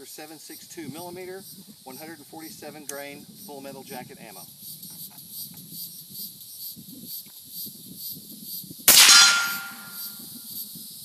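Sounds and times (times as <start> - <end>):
suppressed rifle shot: 8.9 - 10.0.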